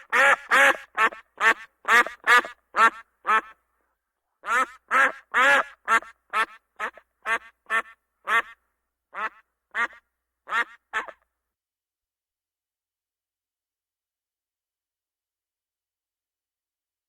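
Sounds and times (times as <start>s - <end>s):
duck quacking: 0.0s - 3.6s, 4.4s - 11.2s.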